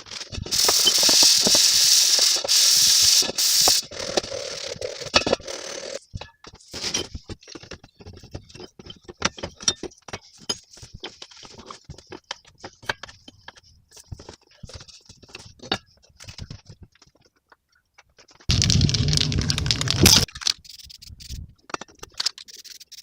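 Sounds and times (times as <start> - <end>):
hands working with tools and parts: 0.0 - 23.0.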